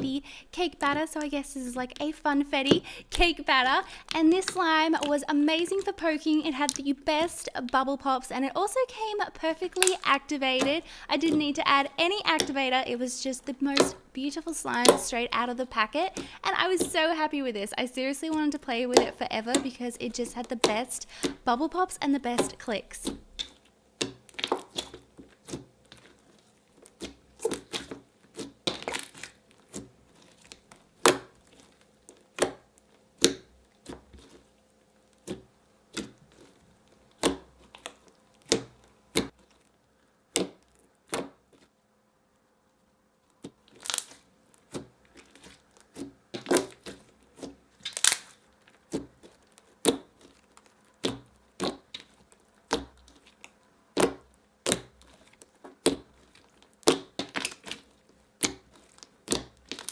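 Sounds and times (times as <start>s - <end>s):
slime squishing and popping: 9.6s - 12.6s, 22.3s - 39.6s, 40.3s - 41.7s, 43.2s - 59.9s.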